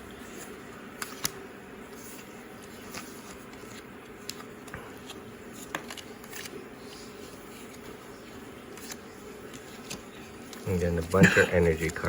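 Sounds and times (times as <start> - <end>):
low room hum: 0.0 - 12.0.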